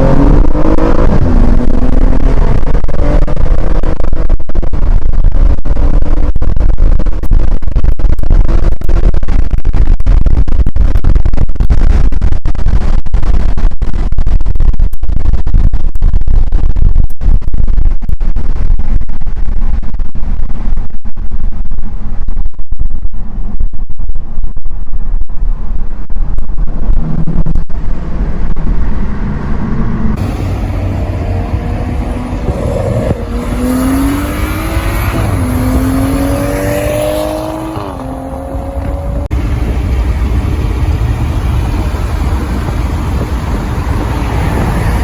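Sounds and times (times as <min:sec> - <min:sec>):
car engine decelerating: 0:00.0 - 0:06.2, 0:26.9 - 0:45.0
road noise: 0:00.0 - 0:10.4, 0:25.7 - 0:45.0
wind buffeting microphone: 0:00.0 - 0:45.0.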